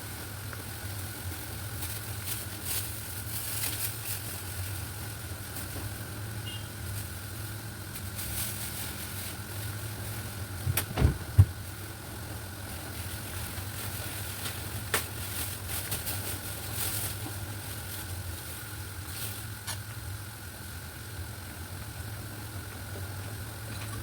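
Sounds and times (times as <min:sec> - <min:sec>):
low machine hum: 0:00.0 - 0:24.0
heavy thumps: 0:10.6 - 0:11.7.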